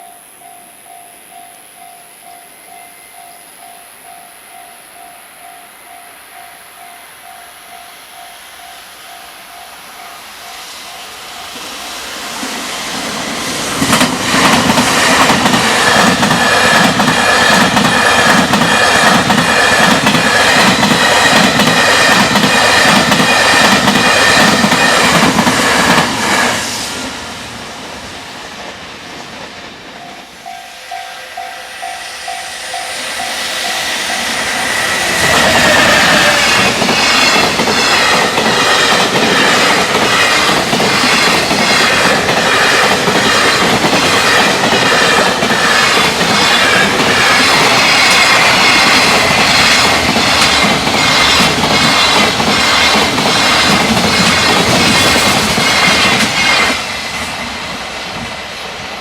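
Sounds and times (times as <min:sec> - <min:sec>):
level-crossing warning bell: 0:00.0 - 0:12.5, 0:29.7 - 0:52.2
second train approaching: 0:00.0 - 0:59.0
train wheels clattering: 0:10.5 - 0:26.8, 0:29.5 - 0:57.4.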